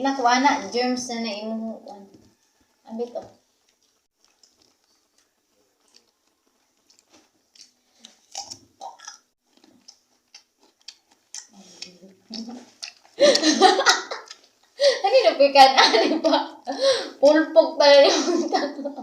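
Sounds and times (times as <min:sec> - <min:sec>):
chewing crunchy fruit: 0:02.2 - 0:13.5, 0:14.2 - 0:14.8.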